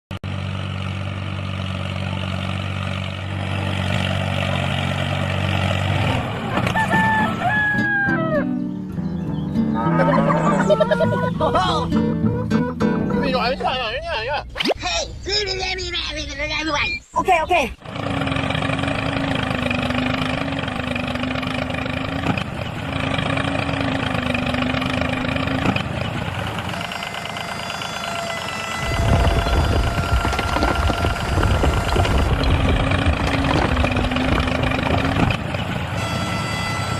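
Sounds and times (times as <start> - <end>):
small tractor engine running: 0.2 - 8.1, 17.8 - 36.9
small motor humming: 26.0 - 34.4
motor whine: 26.0 - 35.1.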